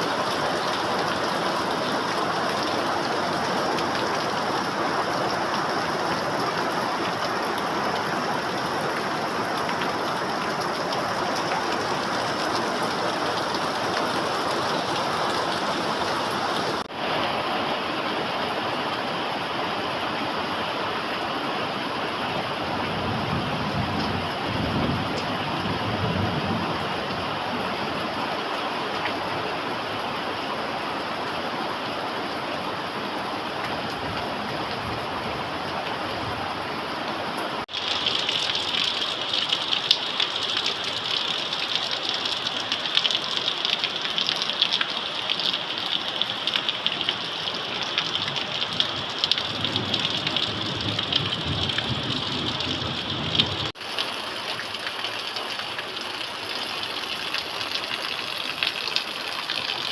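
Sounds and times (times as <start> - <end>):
raindrop patter: 0.0 - 17.0, 37.6 - 59.9
steady rainfall: 0.0 - 59.9.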